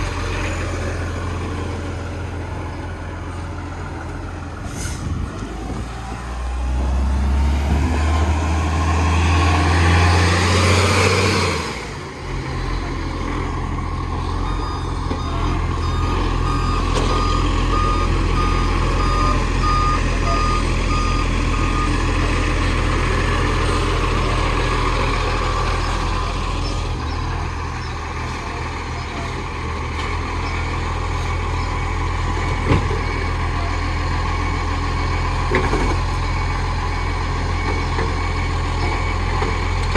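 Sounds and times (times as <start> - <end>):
truck engine revving: 0.0 - 39.9
reversing alarm beeping: 14.3 - 24.5.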